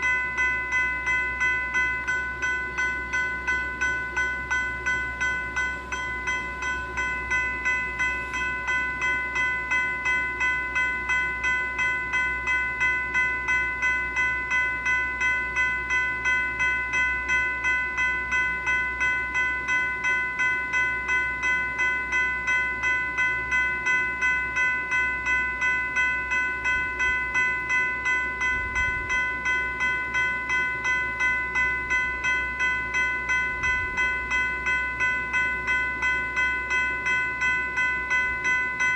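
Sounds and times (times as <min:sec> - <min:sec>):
electronic bell ringing: 0:00.0 - 0:38.9.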